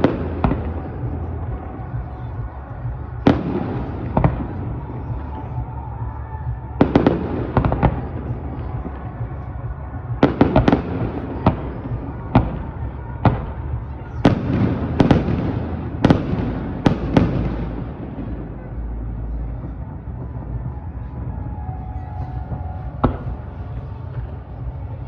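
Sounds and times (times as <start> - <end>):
firework bangs echoing: 0.0 - 18.6.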